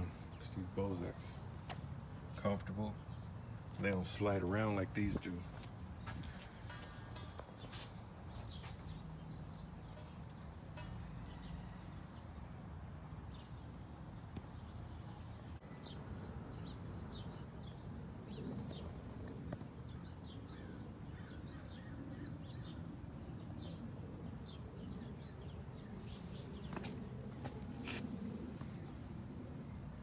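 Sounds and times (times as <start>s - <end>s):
small birds chirping: 13.3s - 29.1s.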